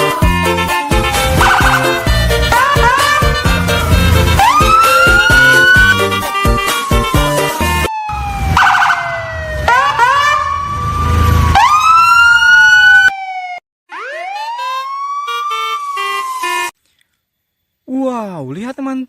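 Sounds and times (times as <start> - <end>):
background music: 0.0 - 7.9
wailing siren: 0.0 - 16.7.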